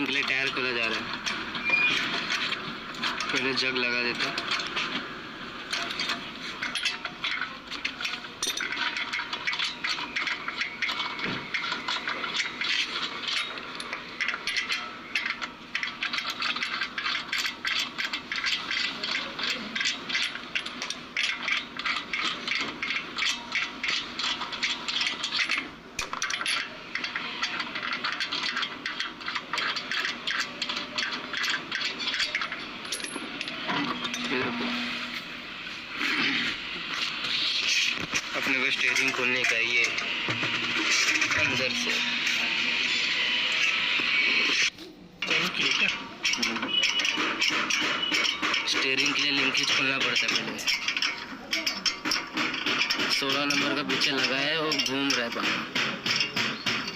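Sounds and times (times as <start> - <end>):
car jack clicking and rattling: 5.7 - 34.3, 45.2 - 56.9.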